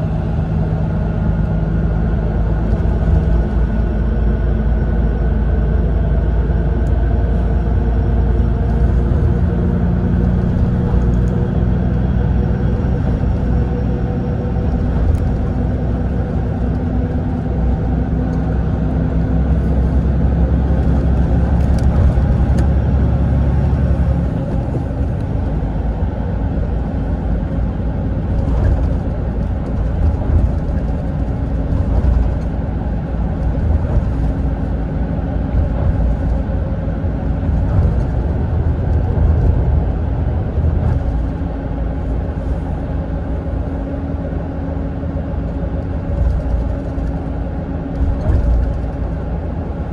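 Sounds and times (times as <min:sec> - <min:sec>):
diesel engine drone: 0:00.0 - 0:49.9
road and tyre rumble: 0:00.0 - 0:49.9.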